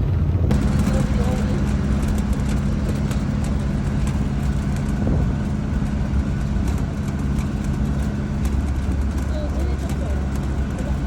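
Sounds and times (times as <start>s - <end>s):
road rumble: 0.0s - 11.0s
vehicle engine hum: 0.0s - 11.0s.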